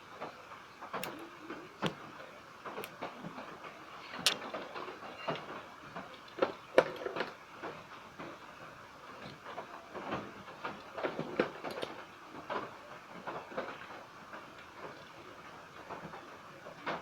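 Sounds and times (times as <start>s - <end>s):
clicks and knocks of small tools: 4.2s - 7.3s.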